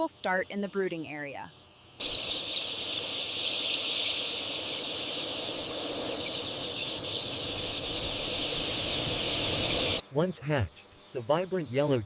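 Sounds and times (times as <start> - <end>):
chicks peeping: 2.0 - 10.0.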